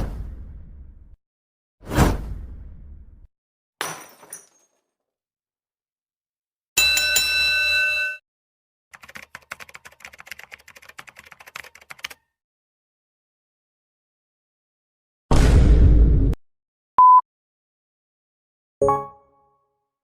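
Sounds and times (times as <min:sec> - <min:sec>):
bright bell-like tone: 0:06.8 - 0:08.2
rapid irregular clicking: 0:09.0 - 0:12.2.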